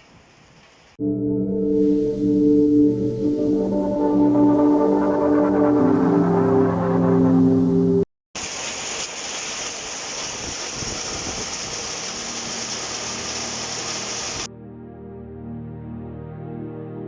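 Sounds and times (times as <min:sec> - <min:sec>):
steady rain falling: 0:08.4 - 0:14.5.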